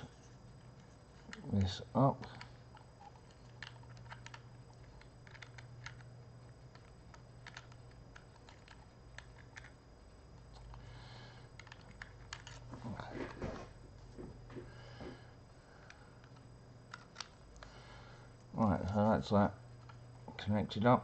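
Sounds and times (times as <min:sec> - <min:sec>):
steady low hum: 0:00.0 - 0:21.0
drive and cable clicks and taps: 0:00.8 - 0:09.8.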